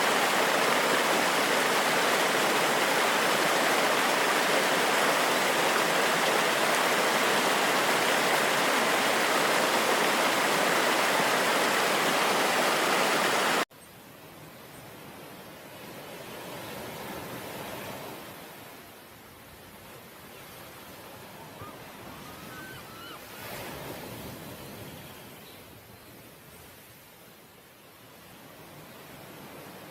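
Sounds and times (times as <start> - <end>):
rushing water: 0.0 - 13.7.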